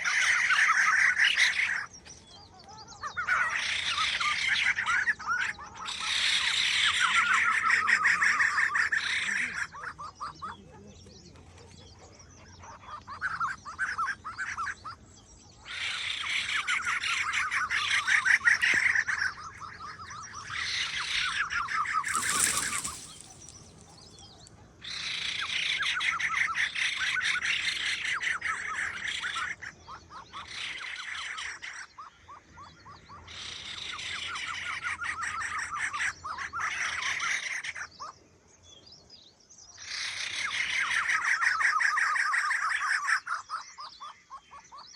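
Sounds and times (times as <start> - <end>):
birds trilling: 0.0 - 44.9.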